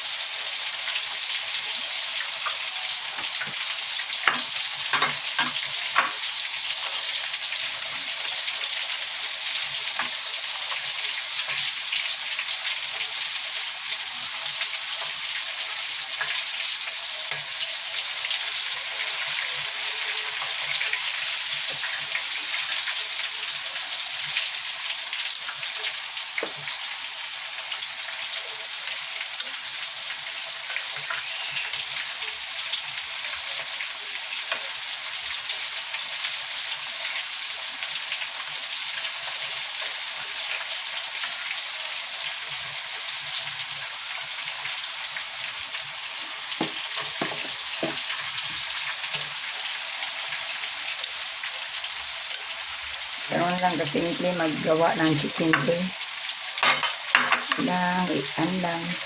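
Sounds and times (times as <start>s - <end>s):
chicken deep-frying in oil: 0.0s - 59.0s
oil popping and crackling: 0.1s - 59.0s.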